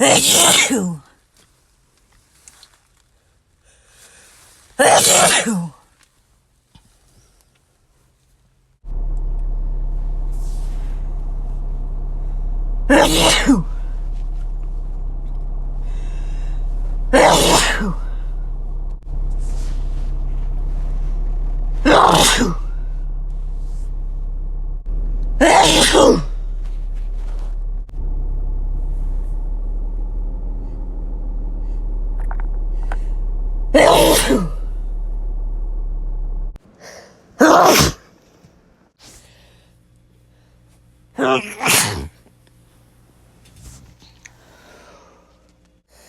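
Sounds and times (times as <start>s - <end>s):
person sneezing: 0.0s - 1.1s, 4.8s - 5.8s, 12.9s - 13.7s, 36.9s - 38.1s, 41.2s - 42.2s
steady low hum: 8.7s - 36.7s.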